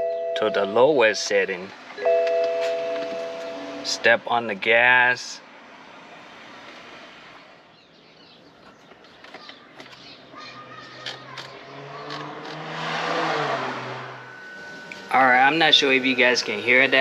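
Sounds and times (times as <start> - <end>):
clicks: 8.6 - 10.1, 11.0 - 12.6
electric pump humming: 13.4 - 17.0.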